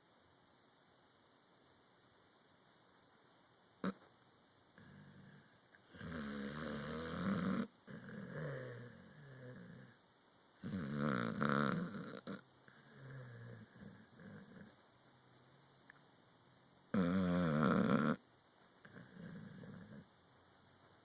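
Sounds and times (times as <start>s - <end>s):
dog snoring: 3.8s - 4.1s, 4.8s - 10.0s, 10.6s - 14.8s, 16.9s - 18.2s, 18.8s - 20.1s.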